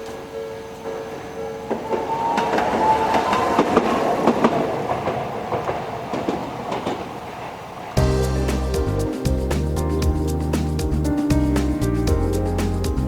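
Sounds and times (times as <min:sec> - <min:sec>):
tram wheels clicking over rail joints: 0:00.0 - 0:13.0
music: 0:08.0 - 0:13.0.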